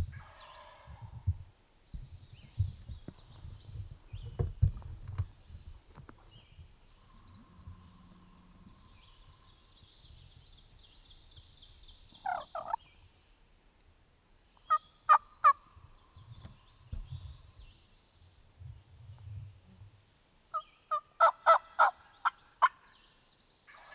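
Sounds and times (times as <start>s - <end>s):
songbirds singing: 0.0s - 13.6s, 14.2s - 23.9s
turkey rattling call: 12.2s - 12.8s, 20.5s - 22.8s
turkey yelping: 12.2s - 12.8s, 21.2s - 22.0s.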